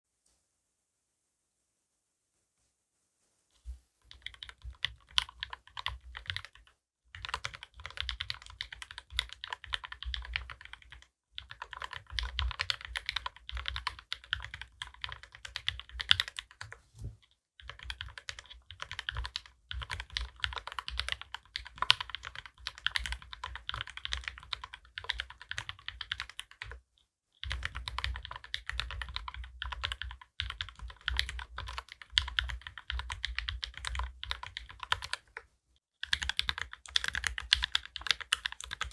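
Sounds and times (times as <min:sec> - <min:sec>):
fast typing on mechanical keyboard: 0:04.1 - 0:16.8, 0:17.6 - 0:26.8, 0:27.4 - 0:35.4, 0:36.0 - 0:38.9.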